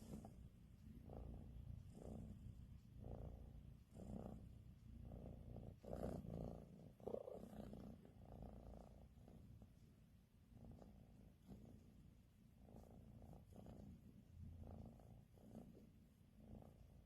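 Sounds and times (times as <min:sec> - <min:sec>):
cat purring: 0:00.0 - 0:17.0.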